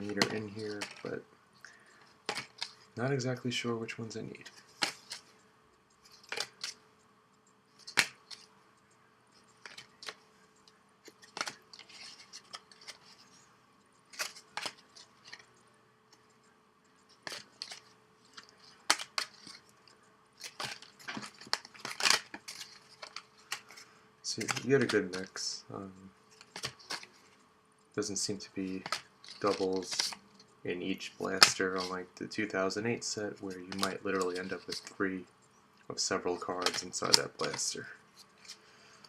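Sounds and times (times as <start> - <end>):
trading cards flipped by hand: 0.0 - 1.2, 2.2 - 2.9, 4.3 - 5.4, 6.0 - 6.8, 7.8 - 8.5, 9.4 - 13.4, 14.1 - 15.5, 17.1 - 25.5, 26.4 - 27.4, 28.2 - 30.2, 33.4 - 35.0, 36.2 - 38.6.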